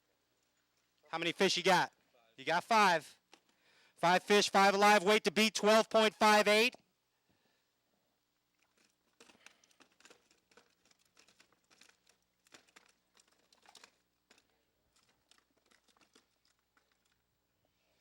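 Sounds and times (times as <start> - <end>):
faint crinkling and rustling: 0.0 - 1.1, 3.1 - 3.7, 8.3 - 18.0.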